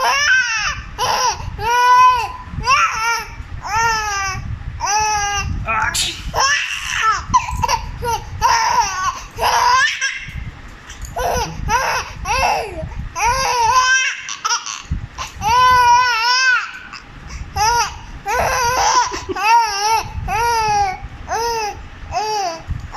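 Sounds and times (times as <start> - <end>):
baby laughing: 6.0 - 10.3, 11.2 - 17.0, 17.6 - 20.6.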